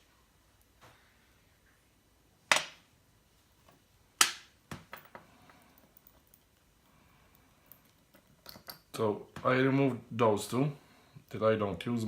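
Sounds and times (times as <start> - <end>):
metal bracelet links clacking: 4.9 - 6.8, 7.6 - 9.0
metal links clicking: 4.9 - 9.0.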